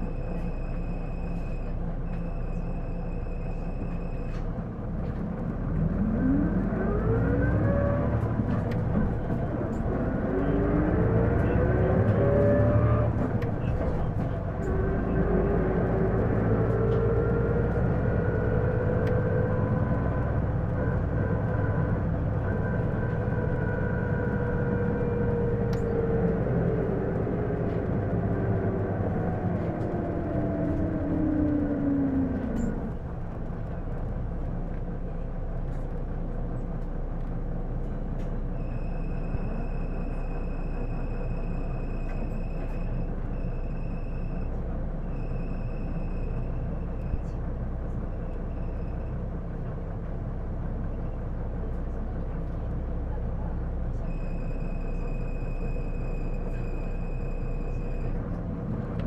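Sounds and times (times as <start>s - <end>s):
bus transmission whine: 0.0s - 59.0s.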